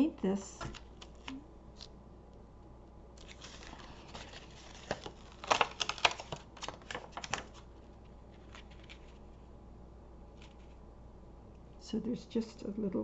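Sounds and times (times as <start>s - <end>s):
paper rustling: 3.2s - 9.5s, 10.3s - 10.8s.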